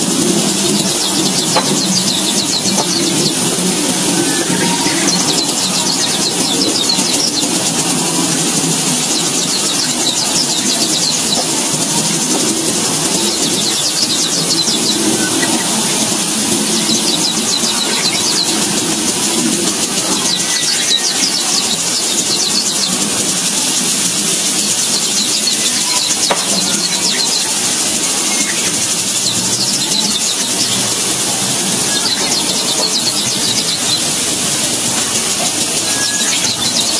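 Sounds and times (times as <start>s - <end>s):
birds chirping rapidly: 0.0s - 36.9s
steady low rumble: 0.0s - 36.9s.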